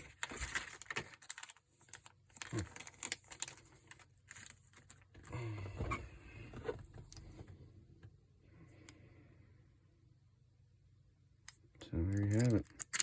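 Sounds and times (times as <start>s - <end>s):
padlock and lock picks clicking: 12.2s - 13.0s.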